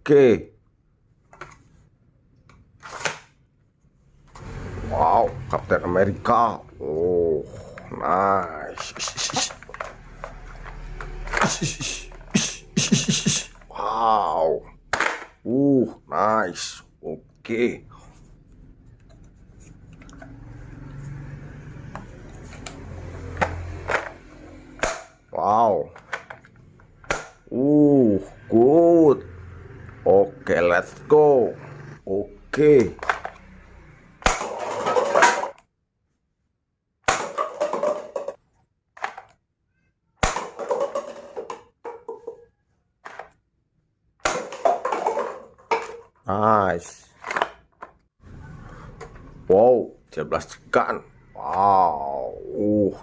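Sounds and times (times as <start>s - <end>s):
plastic toy guns clattering: 8.7s - 12.4s, 14.9s - 15.4s, 24.8s - 25.2s, 25.8s - 27.4s, 34.2s - 35.6s, 37.1s - 38.4s, 39.0s - 39.4s, 40.2s - 42.4s, 44.2s - 46.2s, 47.2s - 48.0s.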